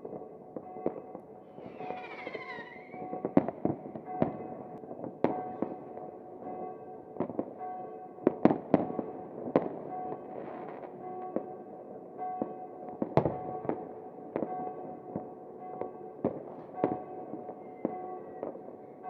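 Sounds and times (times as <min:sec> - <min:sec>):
whistling firework: 0:01.6 - 0:03.1
fireworks bangs: 0:01.6 - 0:03.5.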